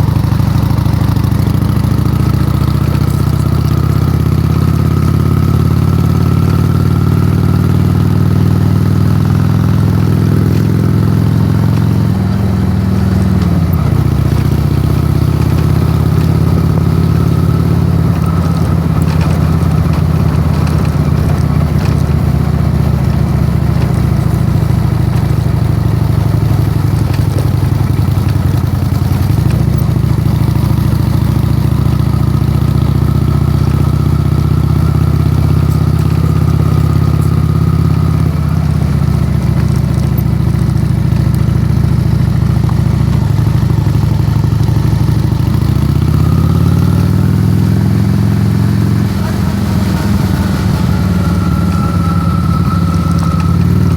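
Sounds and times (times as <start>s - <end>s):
motorcycle engine running: 0.0s - 53.9s.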